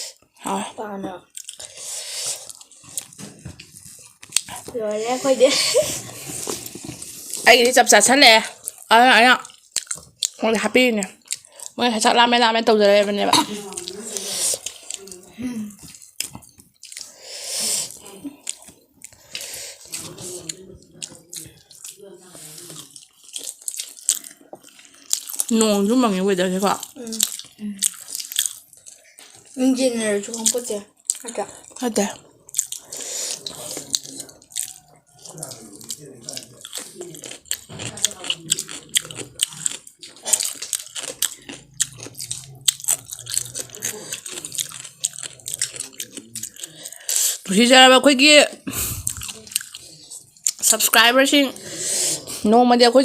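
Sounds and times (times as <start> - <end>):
noisy breaths: 0.0 - 0.4, 1.6 - 2.6, 17.0 - 20.4, 32.8 - 33.9, 46.6 - 47.5, 48.6 - 49.2, 51.5 - 52.5
chewing with wet clicks: 1.2 - 4.8, 6.4 - 12.7, 13.3 - 47.5, 49.0 - 51.2.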